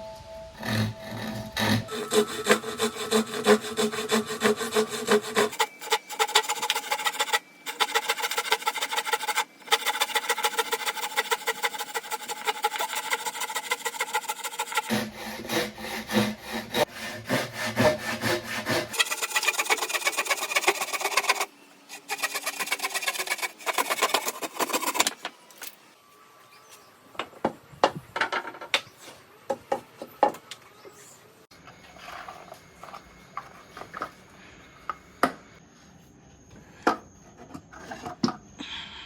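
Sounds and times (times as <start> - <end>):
rubbing strokes on wood: 0.6 - 25.0.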